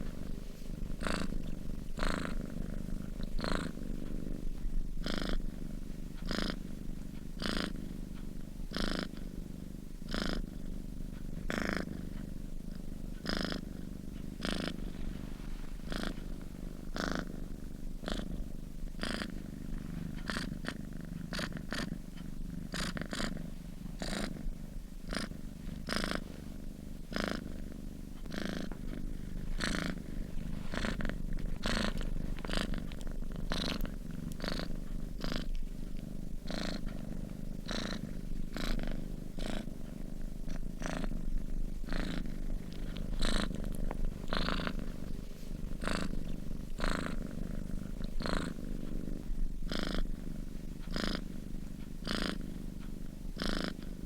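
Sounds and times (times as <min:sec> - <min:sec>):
cat purring: 0:00.0 - 0:54.0.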